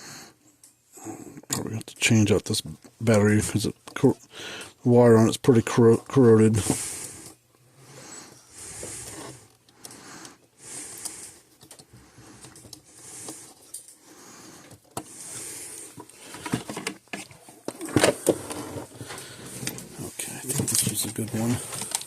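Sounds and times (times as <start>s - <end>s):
rustling of wires and plastic parts: 5.6s - 22.0s.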